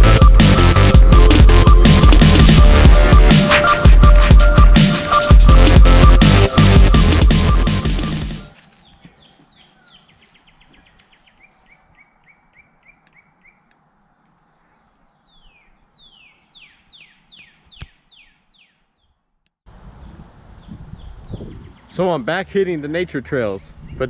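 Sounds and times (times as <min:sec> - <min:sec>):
songbird singing: 0:08.0 - 0:24.0.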